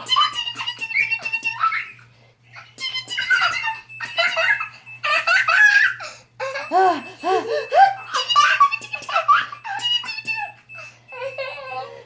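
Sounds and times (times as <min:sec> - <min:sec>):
young child giggling and laughing: 0:02.6 - 0:10.6.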